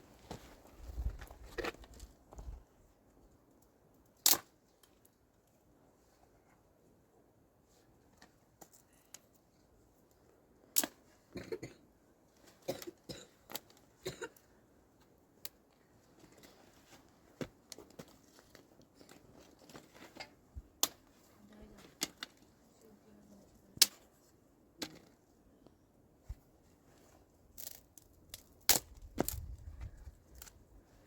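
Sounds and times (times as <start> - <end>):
sharp clicks and crunching: 27.5 - 30.7.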